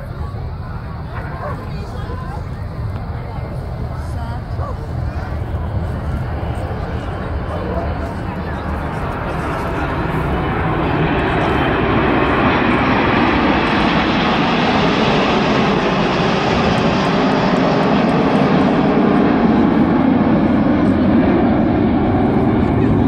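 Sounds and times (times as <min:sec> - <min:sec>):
jet engines flying past: 0:00.0 - 0:23.0.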